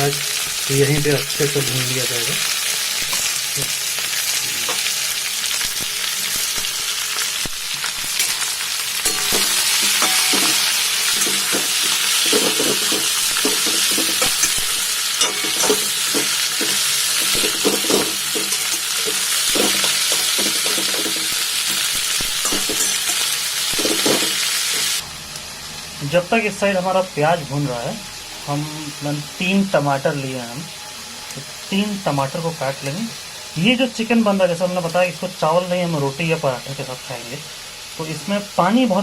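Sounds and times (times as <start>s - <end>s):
onions sizzling in hot oil: 0.0s - 39.0s
spatula stirring and scraping: 8.1s - 25.0s.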